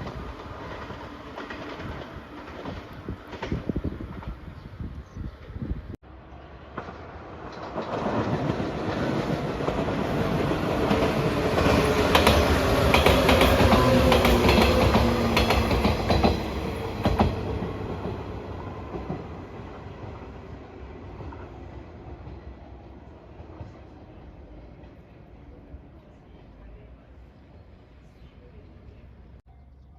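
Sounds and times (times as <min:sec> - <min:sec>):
wheels clacking over rail joints: 0:00.0 - 0:04.5, 0:06.3 - 0:19.4
train rumbling past: 0:00.0 - 0:29.4.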